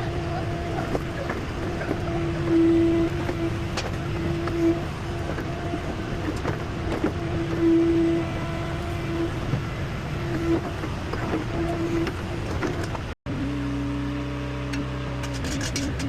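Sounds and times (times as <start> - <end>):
digging machine rumbling: 0.0 - 16.0
clanks and knocks: 15.2 - 16.0.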